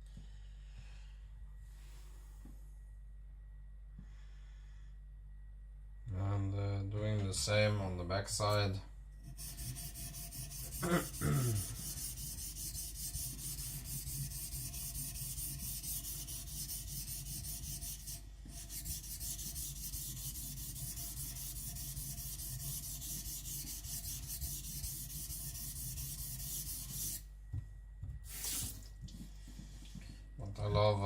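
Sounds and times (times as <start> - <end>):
blade scraping on wet whetstone: 9.3 - 27.2.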